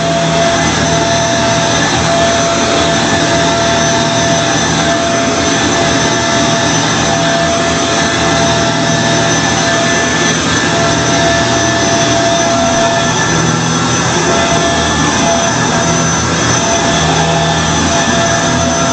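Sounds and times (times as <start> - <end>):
vacuum cleaner running: 0.0 - 18.9.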